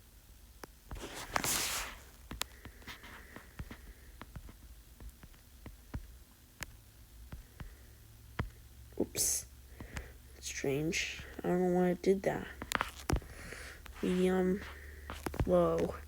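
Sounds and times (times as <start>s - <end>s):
faint low hum: 0.0s - 16.0s
hissing rustle: 0.9s - 4.1s.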